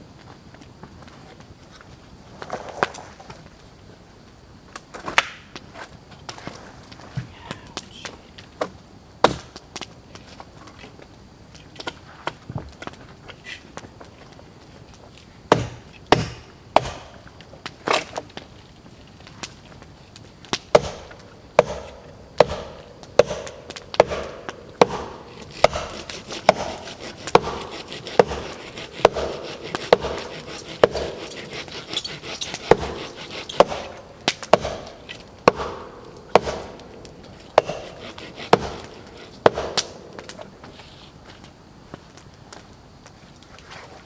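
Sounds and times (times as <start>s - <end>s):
wood being chopped: 8.6s - 9.9s, 15.5s - 17.2s, 20.5s - 36.8s, 37.5s - 40.4s.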